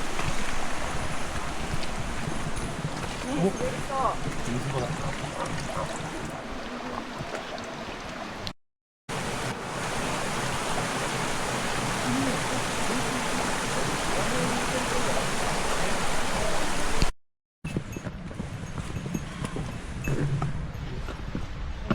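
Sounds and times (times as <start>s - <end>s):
mountain stream rushing: 0.0s - 8.5s, 9.1s - 17.1s.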